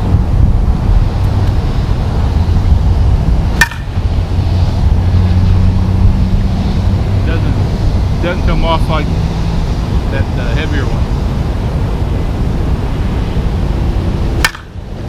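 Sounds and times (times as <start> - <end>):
low rumble: 0.0 - 15.0
bat cracking against softball: 3.5 - 4.2, 14.4 - 15.0.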